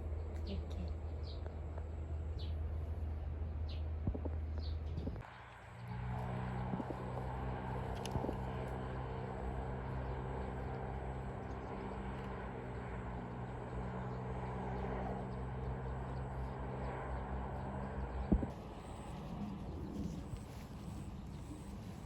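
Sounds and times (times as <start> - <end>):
low motor hum: 0.0 - 22.0.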